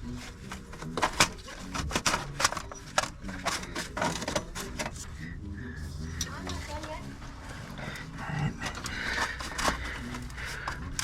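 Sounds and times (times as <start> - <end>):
hand tools clicking and clinking: 0.5 - 5.1, 8.5 - 11.0.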